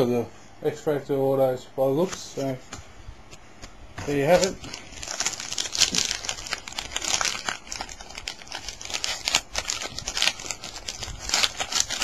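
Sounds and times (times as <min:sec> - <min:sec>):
wrapper tearing and crinkling: 0:04.0 - 0:12.0.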